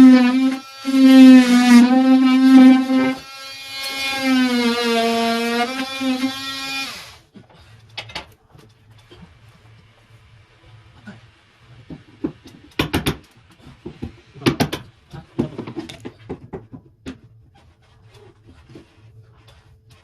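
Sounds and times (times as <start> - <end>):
objects knocking and clattering: 7.7 - 9.1, 11.8 - 17.4.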